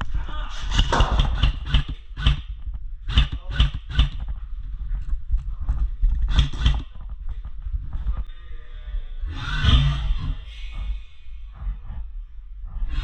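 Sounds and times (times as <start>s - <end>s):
low rumble: 0.0s - 13.0s
sharp knocks: 0.7s - 4.3s.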